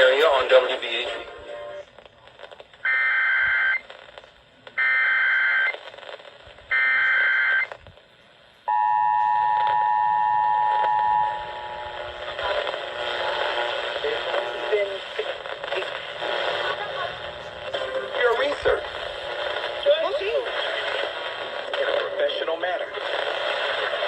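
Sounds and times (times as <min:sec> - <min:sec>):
two-tone attention signal: 0:08.7 - 0:11.7.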